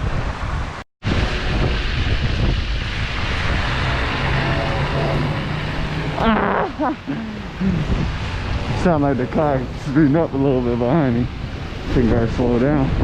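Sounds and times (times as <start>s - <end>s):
traffic rumble: 0.0s - 13.0s
wind buffeting microphone: 0.0s - 13.0s
car engine humming: 1.6s - 11.9s.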